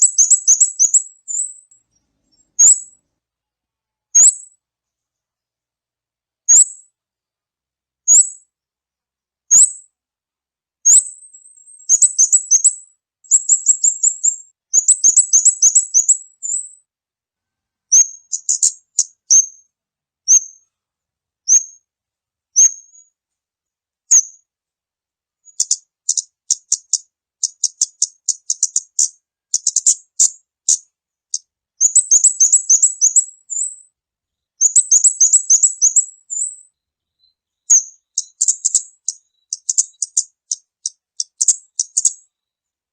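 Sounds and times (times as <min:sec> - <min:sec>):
bird lure high chirps: 0:00.0 - 0:01.7, 0:10.9 - 0:16.8, 0:18.0 - 0:19.6, 0:25.5 - 0:33.8, 0:34.6 - 0:36.7, 0:37.7 - 0:42.3.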